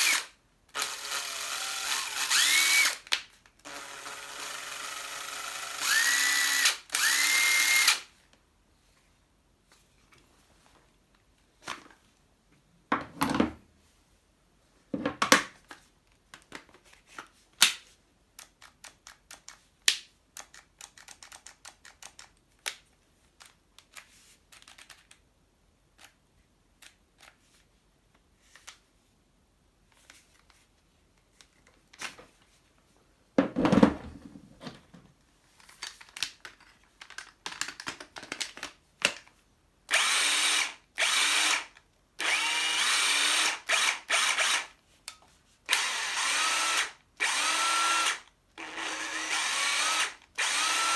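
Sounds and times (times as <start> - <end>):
heavy thumps of tools: 33.4 - 35.1.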